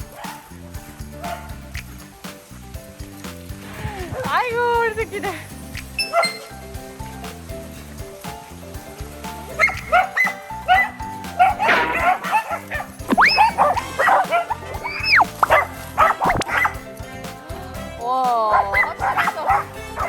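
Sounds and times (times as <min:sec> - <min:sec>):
dogs barking and yipping: 0:00.0 - 0:02.5, 0:03.2 - 0:06.8, 0:08.3 - 0:17.1, 0:18.4 - 0:20.0
background music: 0:00.0 - 0:20.0
dog whining: 0:06.0 - 0:06.5, 0:09.6 - 0:16.8.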